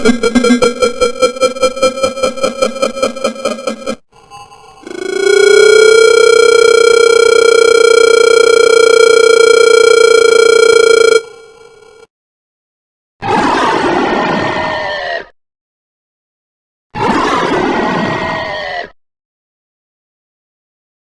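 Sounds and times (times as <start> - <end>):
long buzzy creature tone: 0.0 - 12.1.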